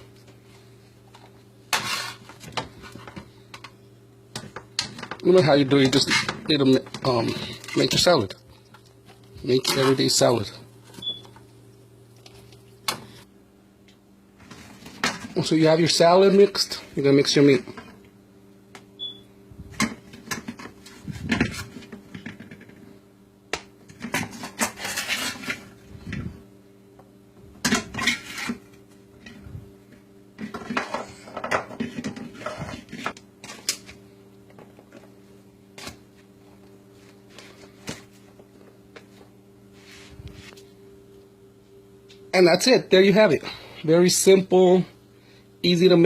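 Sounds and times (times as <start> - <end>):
steady low hum: 0.0 - 46.0
utensils scraping against cookware: 1.7 - 3.1, 5.8 - 6.5, 24.2 - 25.7, 27.9 - 28.7.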